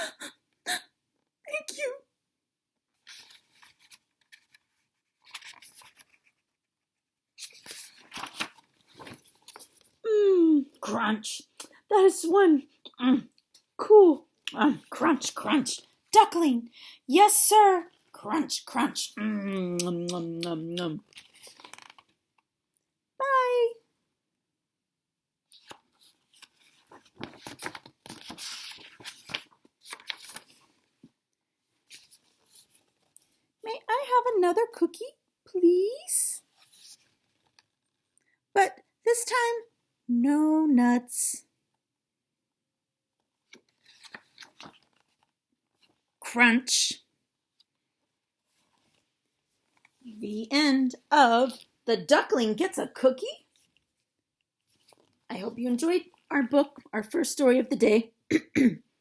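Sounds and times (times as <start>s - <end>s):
book page turning: 3.0s - 6.7s, 7.4s - 10.0s, 19.1s - 22.2s, 25.5s - 33.5s, 36.4s - 38.2s, 43.4s - 46.1s, 47.6s - 50.1s, 54.6s - 55.3s.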